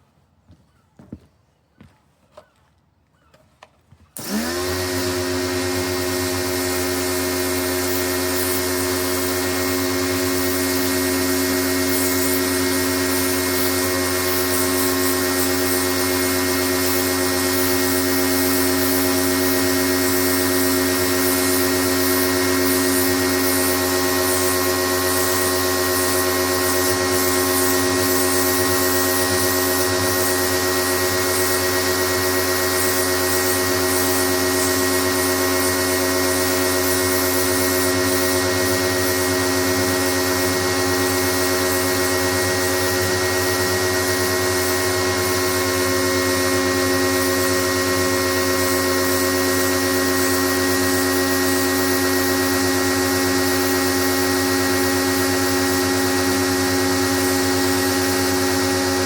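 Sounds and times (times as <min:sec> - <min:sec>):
pressure washer humming and hissing: 0:04.2 - 0:59.0.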